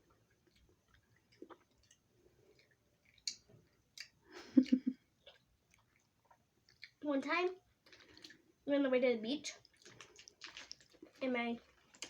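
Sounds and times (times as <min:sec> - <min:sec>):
person chewing candy: 0:00.0 - 0:07.0, 0:07.7 - 0:08.5, 0:09.5 - 0:12.0.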